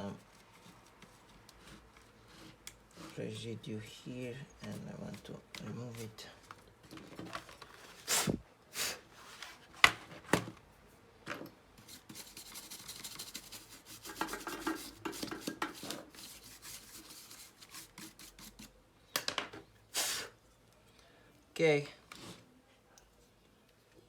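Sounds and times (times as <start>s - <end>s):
rubbing and scraping metal parts: 11.8s - 18.6s.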